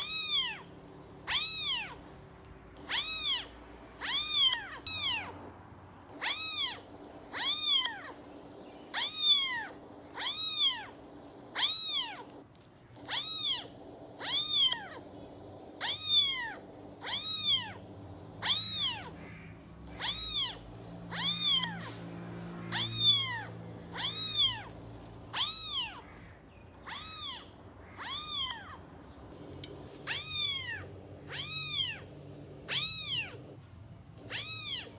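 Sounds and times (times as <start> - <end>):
kitten meowing: 0.0 - 0.7, 1.3 - 2.0, 2.8 - 5.5, 6.1 - 8.2, 8.9 - 12.4, 13.0 - 15.1, 15.8 - 17.8, 18.4 - 19.2, 20.0 - 21.9, 22.7 - 26.2, 26.8 - 28.9, 29.9 - 33.6, 34.2 - 34.9.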